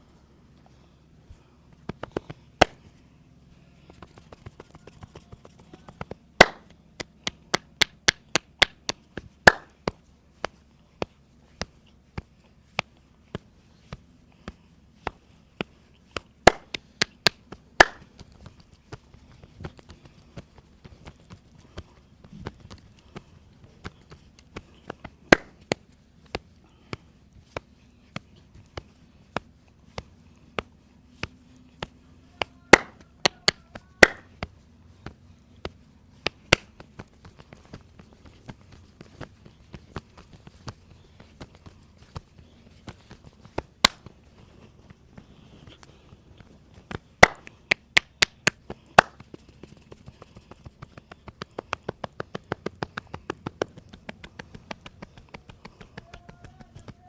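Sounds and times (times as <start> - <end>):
hands slapping and chopping on body: 1.7 - 2.9, 3.8 - 57.0.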